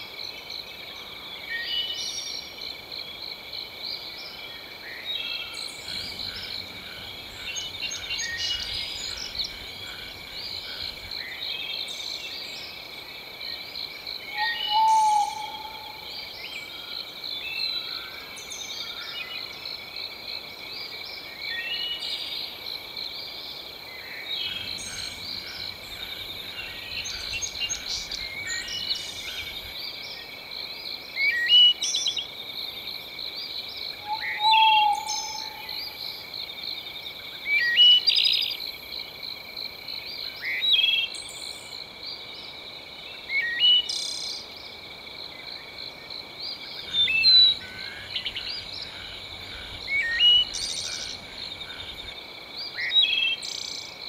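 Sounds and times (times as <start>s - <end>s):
pulsing chorus of insects or frogs: 0.0s - 54.0s
birds chirping: 5.4s - 12.3s, 14.3s - 16.7s, 24.2s - 29.8s, 34.0s - 36.0s, 46.4s - 53.5s.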